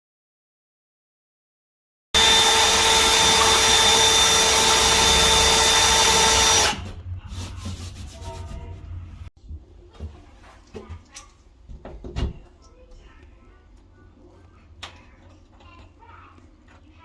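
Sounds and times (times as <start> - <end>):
power drill running: 2.2 - 6.8.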